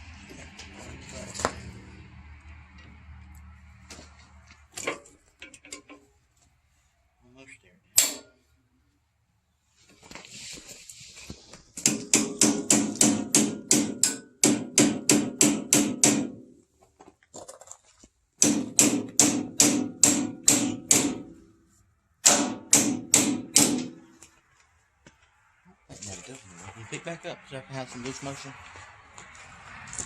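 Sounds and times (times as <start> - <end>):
hammer striking metal: 8.0 - 8.4, 11.8 - 16.5, 18.4 - 21.4, 22.2 - 24.2.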